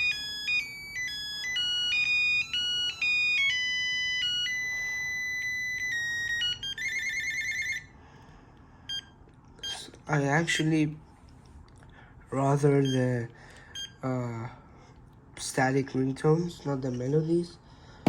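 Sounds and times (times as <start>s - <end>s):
phone ringtone beep melody: 0.0s - 7.9s, 13.8s - 14.0s
fast trilling phone ring: 0.0s - 8.0s.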